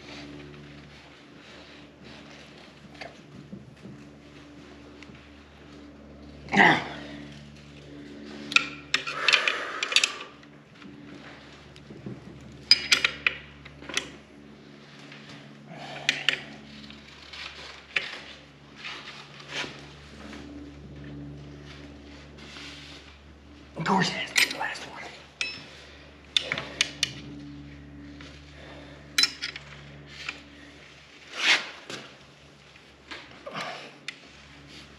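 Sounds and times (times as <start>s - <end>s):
wrench clinking on metal bolts: 12.7s - 13.4s, 25.4s - 25.6s, 29.2s - 29.6s.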